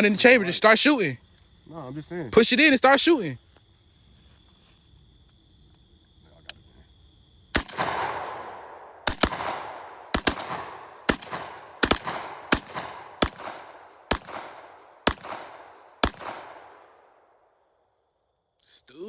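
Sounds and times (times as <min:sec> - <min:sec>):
gunshots with echoing tails: 0:07.5 - 0:17.4.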